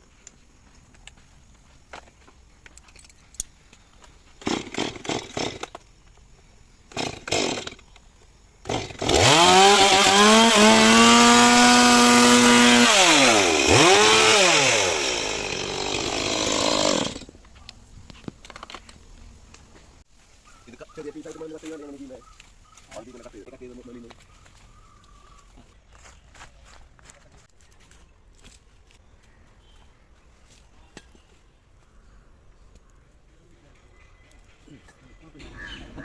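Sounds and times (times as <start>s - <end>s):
chainsaw engine revving: 4.4s - 5.7s, 6.9s - 7.8s, 8.6s - 17.3s
chainsaw pull-start cranking: 4.4s - 5.8s, 6.9s - 7.8s, 8.6s - 17.4s.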